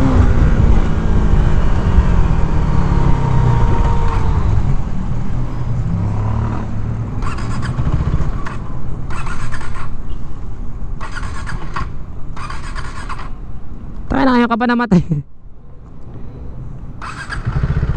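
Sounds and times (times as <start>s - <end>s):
wind on microphone: 0.0s - 5.6s
motorcycle engine running: 6.2s - 10.0s, 17.0s - 17.9s.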